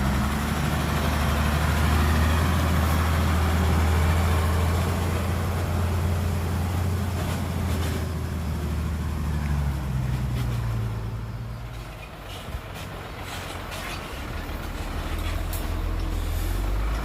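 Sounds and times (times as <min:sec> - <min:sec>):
diesel truck engine running: 0:00.0 - 0:17.0.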